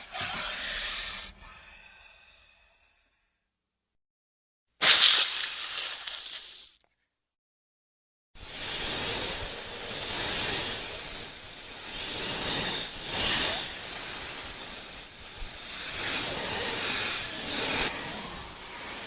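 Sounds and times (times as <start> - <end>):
snake hissing: 0.0 - 2.7, 4.8 - 6.8, 8.4 - 19.0.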